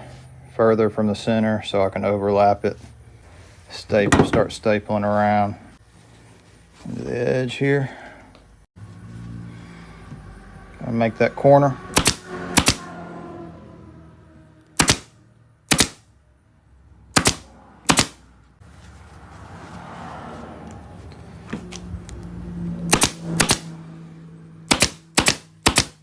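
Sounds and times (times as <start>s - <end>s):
soft rustling: 2.7s - 4.0s, 4.6s - 7.4s, 18.6s - 21.8s
staple gun snaps: 12.0s - 12.8s, 24.7s - 26.0s.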